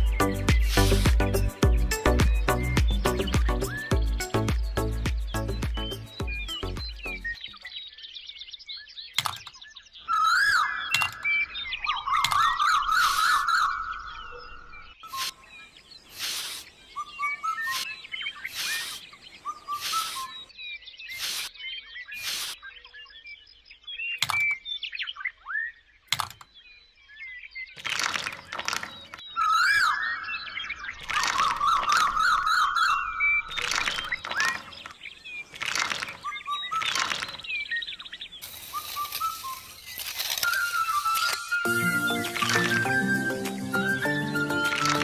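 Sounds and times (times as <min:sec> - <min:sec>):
birds chirping: 0:00.0 - 0:45.0
loud hissing bursts: 0:00.6 - 0:01.1, 0:16.1 - 0:16.7, 0:17.6 - 0:19.1, 0:19.7 - 0:20.3, 0:21.2 - 0:21.5, 0:22.2 - 0:22.6, 0:38.4 - 0:39.8.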